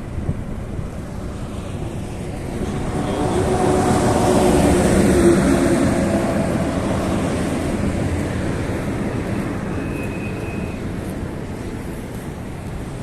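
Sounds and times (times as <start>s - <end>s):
vehicle engine rumbling past: 1.1s - 12.6s.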